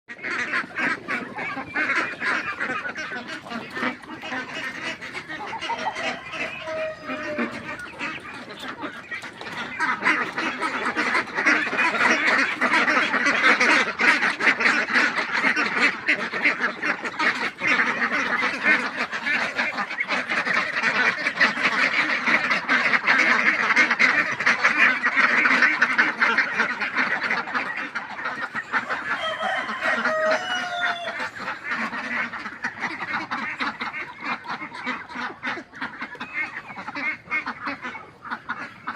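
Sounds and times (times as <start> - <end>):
ducks quacking: 0.1 - 38.9.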